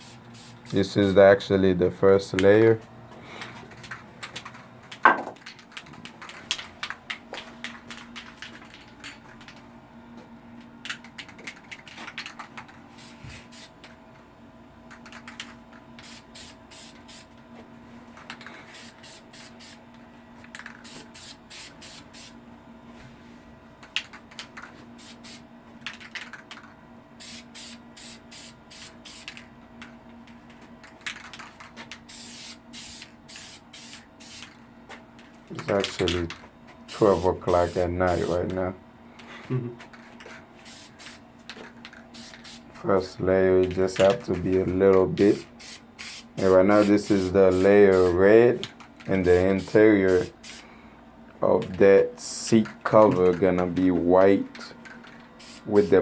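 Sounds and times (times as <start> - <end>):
spray paint hissing: 0.0 - 1.2, 13.0 - 13.8, 16.0 - 17.3, 18.7 - 19.8, 20.7 - 22.4, 25.0 - 25.4, 27.2 - 29.4, 31.9 - 34.6, 36.9 - 38.3, 40.6 - 41.2, 42.1 - 42.8, 45.3 - 48.2, 49.2 - 50.6, 55.4 - 56.0
faint steady hum: 0.0 - 56.0.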